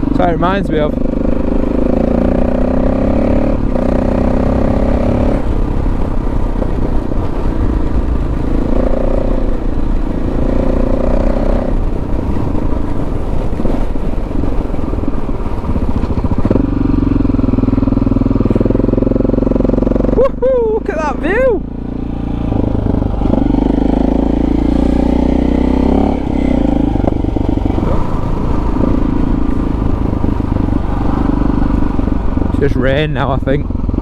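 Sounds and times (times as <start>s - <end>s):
motorcycle engine running: 0.0s - 34.0s
wind and road noise: 0.0s - 34.0s.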